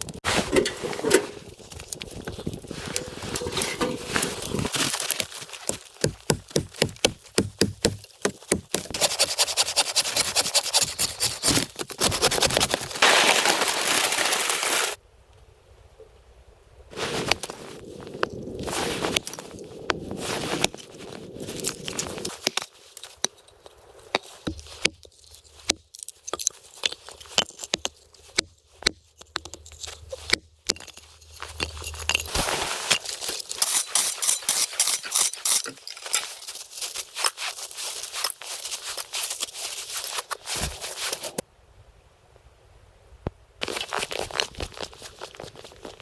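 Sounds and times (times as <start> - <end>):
hands scraping and clicking: 0.0 - 12.8.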